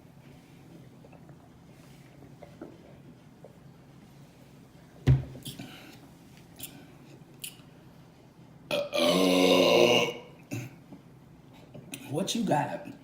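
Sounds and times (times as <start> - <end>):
person burping loudly: 8.7 - 10.8.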